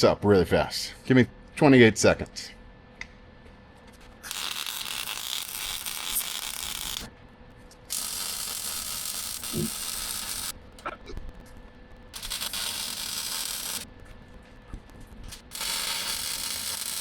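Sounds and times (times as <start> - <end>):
welder arc crackling and hissing: 4.2 - 7.1, 7.8 - 14.0, 14.6 - 17.0.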